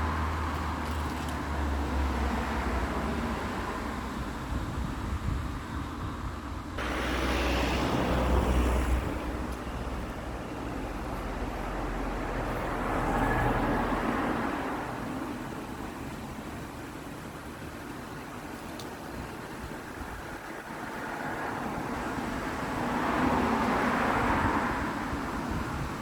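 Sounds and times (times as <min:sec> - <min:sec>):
wind gusts on microphone: 0:01.4 - 0:11.5, 0:19.2 - 0:26.0.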